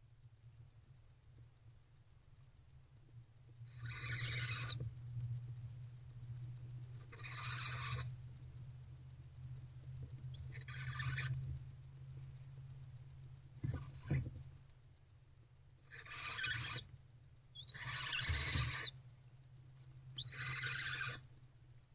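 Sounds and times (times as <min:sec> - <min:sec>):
steady low hum: 0:00.0 - 0:21.9
owlets rasping screeches: 0:03.7 - 0:04.8, 0:06.9 - 0:08.1, 0:10.4 - 0:11.4, 0:15.9 - 0:16.9, 0:17.6 - 0:19.0, 0:20.2 - 0:21.2.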